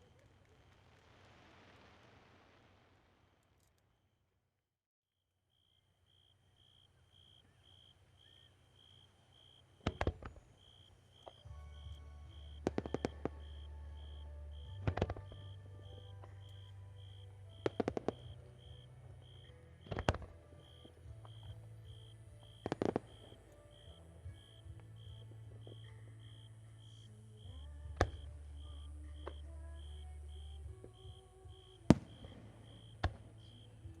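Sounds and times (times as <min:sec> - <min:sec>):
fireworks bursting: 0:00.0 - 0:03.6, 0:09.6 - 0:26.0, 0:29.2 - 0:34.0.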